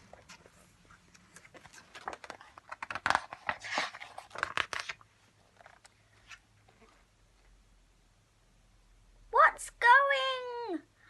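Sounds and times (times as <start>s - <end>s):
book pages turning: 0.0s - 7.0s.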